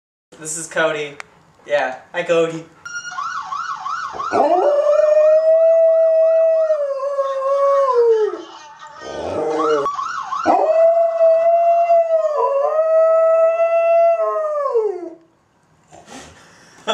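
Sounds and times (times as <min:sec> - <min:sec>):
police siren yelp: 0:02.9 - 0:08.5, 0:09.1 - 0:15.2
dog howling: 0:04.3 - 0:08.5, 0:09.1 - 0:15.2.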